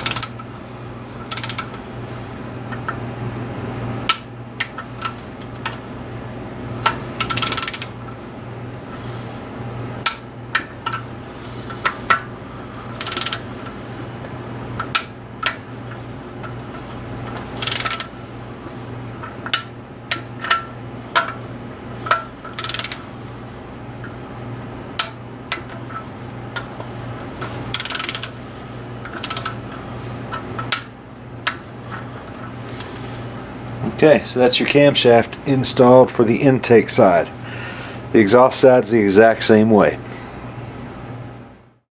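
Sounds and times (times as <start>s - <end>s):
ratchet bursts: 0.0s - 0.4s, 1.2s - 1.7s, 7.2s - 7.9s, 13.0s - 13.5s, 17.6s - 18.1s, 22.1s - 23.1s, 27.7s - 28.4s, 29.1s - 29.6s.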